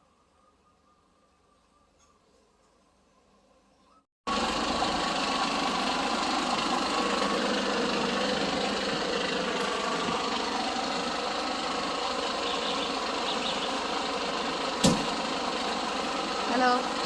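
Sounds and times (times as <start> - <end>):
engine idling: 4.3 - 17.0.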